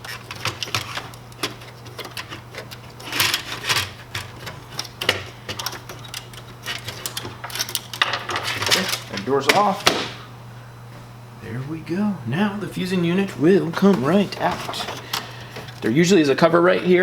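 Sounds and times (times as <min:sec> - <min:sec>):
plastic clicks and rattling: 0:00.0 - 0:09.3
steady low hum: 0:00.0 - 0:17.0.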